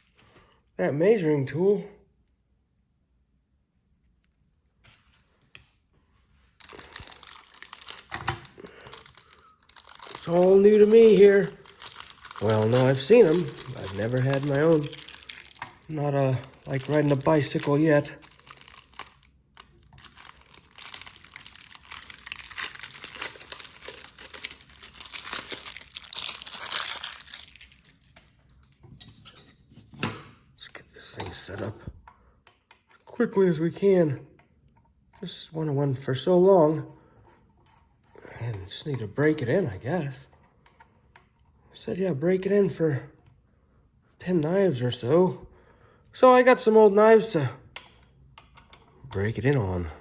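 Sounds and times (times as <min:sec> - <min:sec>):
packaging crinkling and tearing: 0:06.6 - 0:28.8.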